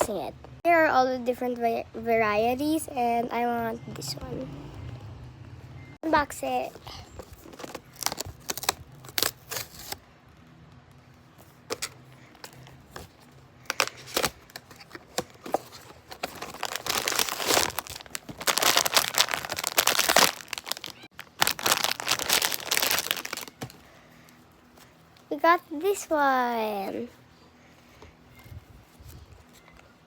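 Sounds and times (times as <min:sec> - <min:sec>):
packaging tearing and crinkling: 0:07.2 - 0:10.0, 0:13.7 - 0:23.8.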